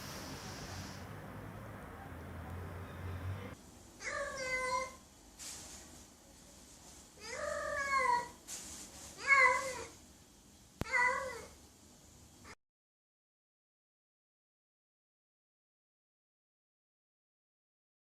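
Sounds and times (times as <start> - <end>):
cat meowing: 4.0 - 5.0, 7.2 - 8.4, 9.2 - 10.0, 10.8 - 11.6.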